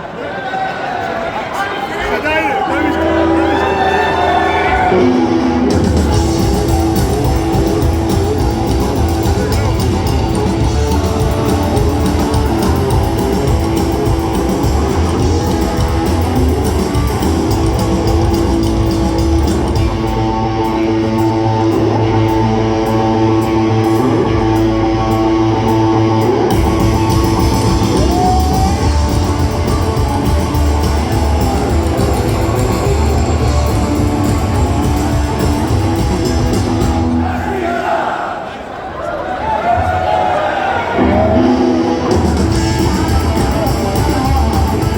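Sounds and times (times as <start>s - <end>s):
live rock band playing: 2.7s - 37.2s, 41.0s - 44.9s.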